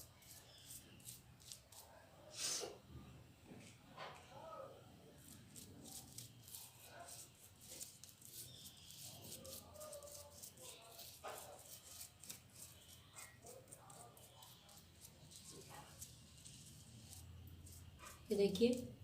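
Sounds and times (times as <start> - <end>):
paintbrush dabbing on rough paper: 5.2 - 19.0.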